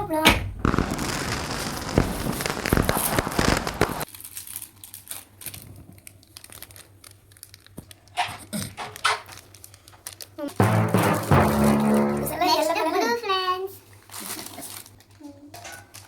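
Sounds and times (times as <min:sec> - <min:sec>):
crinkling handling noise: 0:01.7 - 0:11.4, 0:13.9 - 0:16.0.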